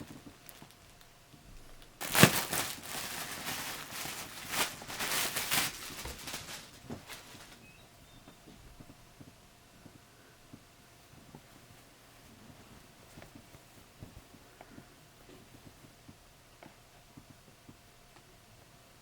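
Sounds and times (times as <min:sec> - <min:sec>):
packaging rustling and crinkling: 0:00.0 - 0:07.7.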